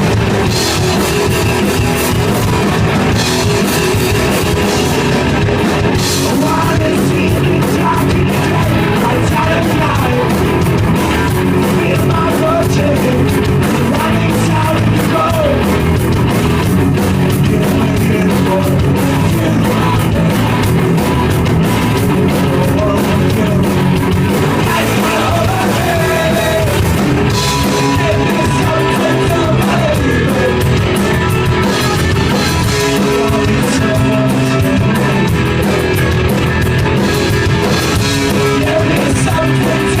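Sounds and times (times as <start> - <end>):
punk rock band playing live: 0.0 - 40.0
person shouting singing: 11.6 - 15.8, 24.5 - 30.8, 32.8 - 35.2, 38.4 - 40.0.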